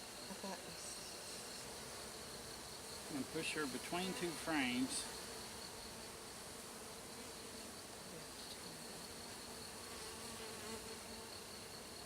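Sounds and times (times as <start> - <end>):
honeybees buzzing: 0.0 - 12.0.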